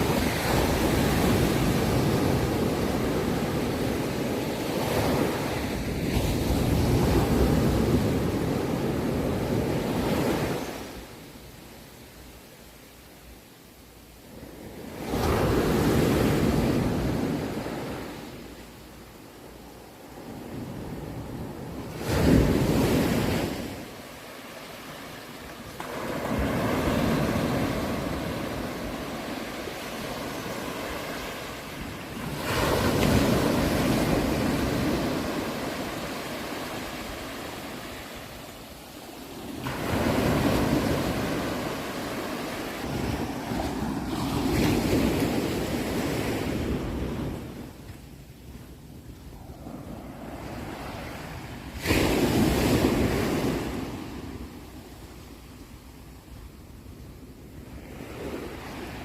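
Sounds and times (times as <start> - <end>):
ocean waves breaking: 0.0 - 11.0, 19.6 - 47.8, 49.4 - 54.6.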